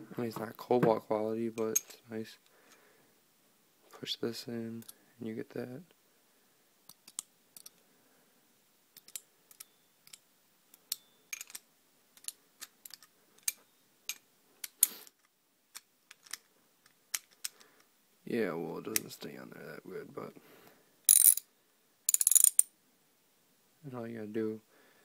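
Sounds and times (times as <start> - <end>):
metallic clicks of ratchet sockets: 6.9 - 7.7, 9.0 - 11.6, 22.1 - 22.6.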